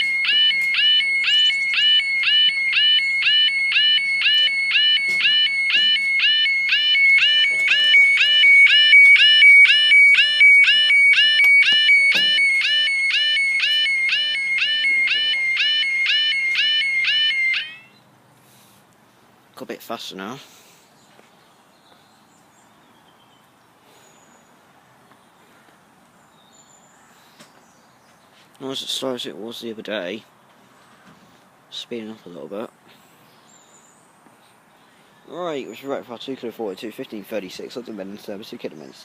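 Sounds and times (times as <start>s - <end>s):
level crossing warbling alarm: 0.0s - 18.0s.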